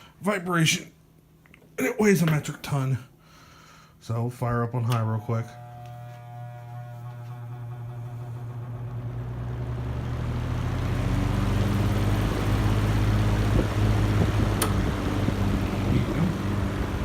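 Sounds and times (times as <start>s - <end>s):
box fan humming: 4.4s - 17.0s.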